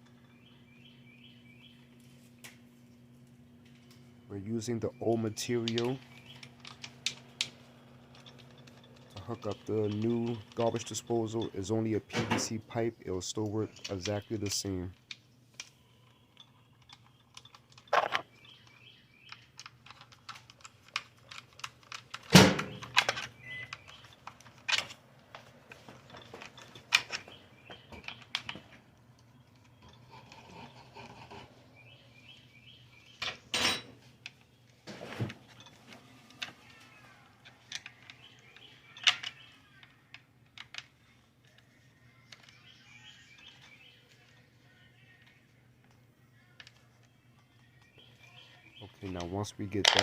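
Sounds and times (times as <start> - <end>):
tools and plumbing parts clattering: 4.6 - 15.1, 16.3 - 18.3, 19.4 - 31.6, 33.2 - 34.1, 34.8 - 36.6, 48.3 - 50.0
faint bird chirps: 22.7 - 24.2, 41.8 - 45.2.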